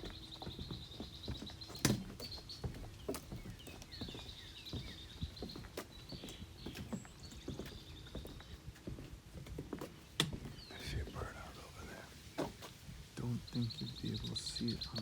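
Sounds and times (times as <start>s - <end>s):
footsteps on a trail: 0.0s - 15.0s.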